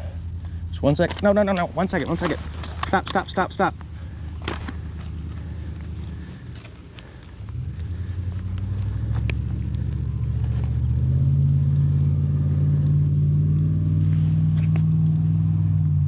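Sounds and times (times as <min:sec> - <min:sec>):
low engine drone: 0:00.0 - 0:16.0.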